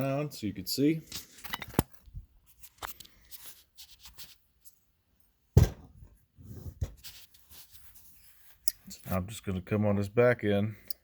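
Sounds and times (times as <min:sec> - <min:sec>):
tools clicking and rustling: 0:01.1 - 0:02.1
heavy thunk: 0:05.6 - 0:06.1.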